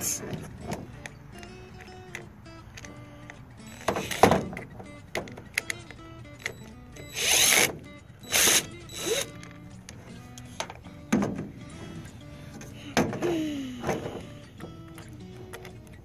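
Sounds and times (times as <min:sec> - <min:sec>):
background music: 0:00.0 - 0:16.0
short rasping bursts: 0:07.1 - 0:09.3.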